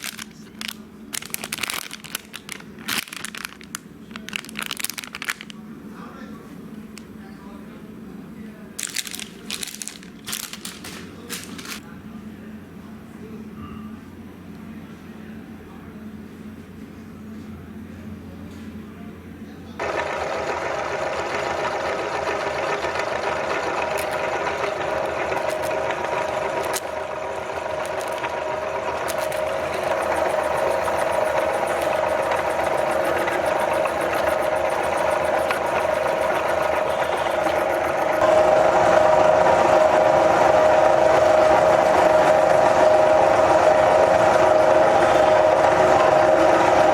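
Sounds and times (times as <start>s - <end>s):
electric meat grinder motor: 19.8s - 46.9s.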